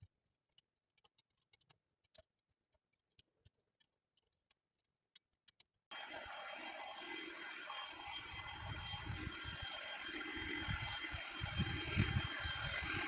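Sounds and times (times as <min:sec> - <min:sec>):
small power tool running: 0:05.9 - 0:13.0.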